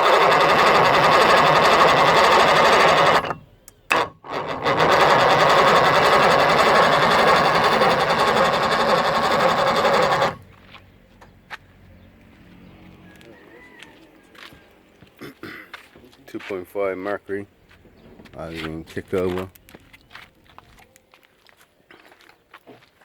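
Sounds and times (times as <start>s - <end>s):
outboard motor cranking clatter: 0.0s - 10.5s.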